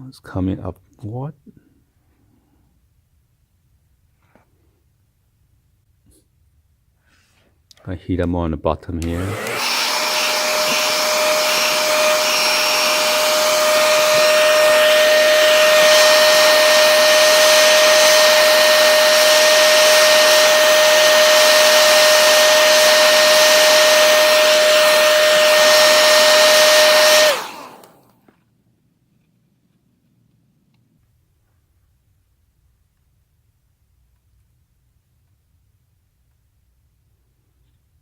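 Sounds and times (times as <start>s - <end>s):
hair dryer running: 9.0s - 28.1s.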